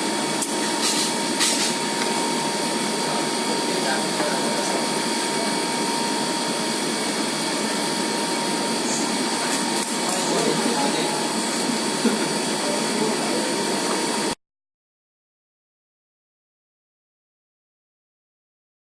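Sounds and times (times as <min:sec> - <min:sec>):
machine hiss and whine: 0:00.0 - 0:14.4.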